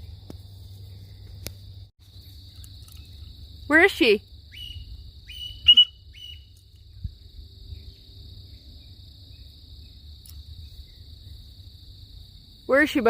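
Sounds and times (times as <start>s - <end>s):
insect chorus drone: 0.0s - 13.0s
short high chirps: 4.6s - 6.5s.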